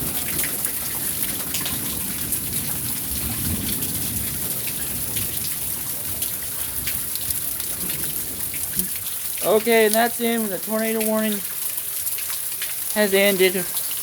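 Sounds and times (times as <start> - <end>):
low thunder rumble: 0.0 - 9.4
heavy rain on hard surface: 0.0 - 14.0.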